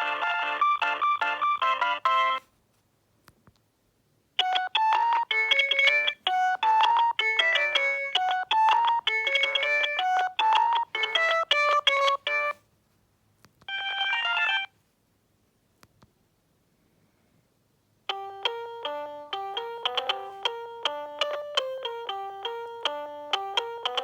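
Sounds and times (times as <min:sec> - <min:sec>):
electronic phone ringtone: 0:00.0 - 0:02.4, 0:04.4 - 0:12.6, 0:13.7 - 0:14.7, 0:18.1 - 0:24.0.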